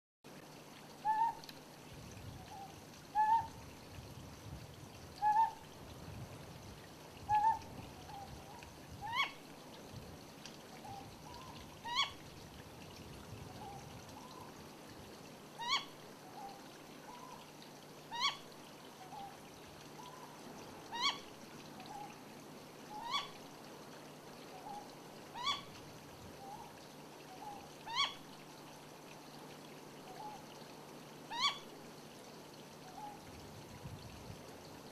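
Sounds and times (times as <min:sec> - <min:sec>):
owl upward-sliding call: 0:03.2 - 0:03.5.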